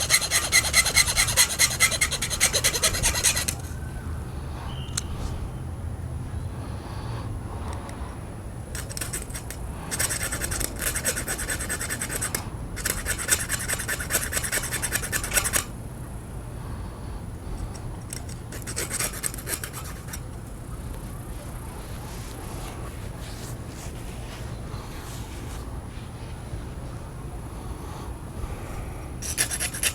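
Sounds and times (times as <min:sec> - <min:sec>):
file rasping on thin metal: 0:00.0 - 0:03.6, 0:08.8 - 0:15.7, 0:18.1 - 0:20.3, 0:29.2 - 0:29.9.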